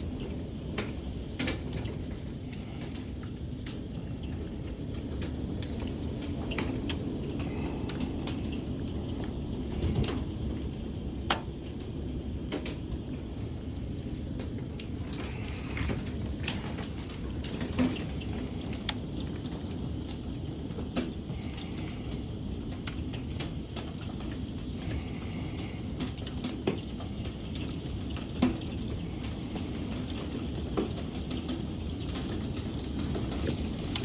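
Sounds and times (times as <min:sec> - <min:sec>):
rain and wind rushing: 0:00.0 - 0:34.0
low rumble: 0:04.4 - 0:20.4.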